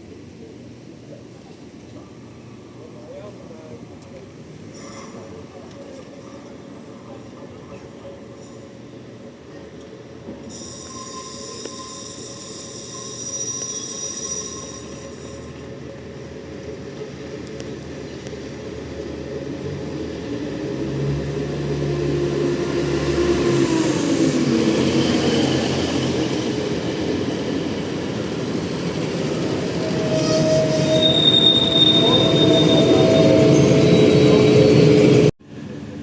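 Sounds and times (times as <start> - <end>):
train approaching on rails: 0.0 - 36.0
high-pitched wheel squeal: 10.5 - 15.5, 29.1 - 35.3.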